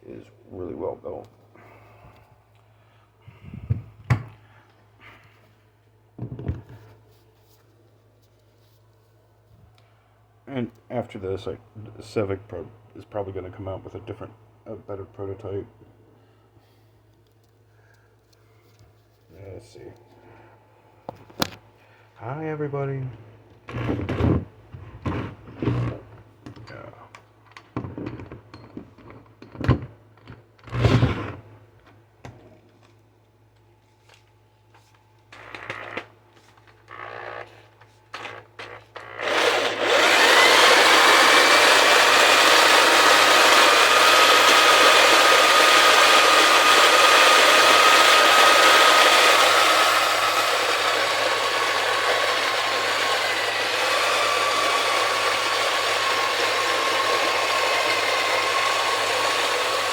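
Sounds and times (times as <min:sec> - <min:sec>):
electric drill whining: 0:35.4 - 0:59.9
coffee beans grinding: 0:38.5 - 0:59.9.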